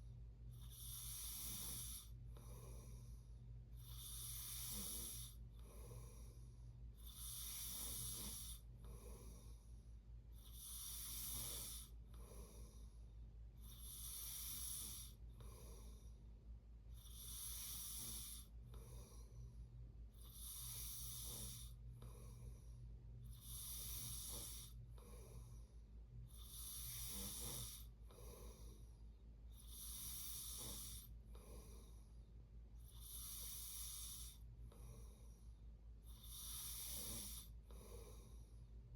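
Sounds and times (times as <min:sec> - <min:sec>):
steady low hum: 0:00.0 - 0:38.9
person snoring: 0:00.7 - 0:03.0, 0:03.8 - 0:06.4, 0:07.0 - 0:09.6, 0:10.4 - 0:12.8, 0:13.7 - 0:16.0, 0:17.1 - 0:19.4, 0:20.3 - 0:22.5, 0:23.4 - 0:25.5, 0:26.4 - 0:28.8, 0:29.6 - 0:32.0, 0:32.9 - 0:35.2, 0:36.2 - 0:38.4.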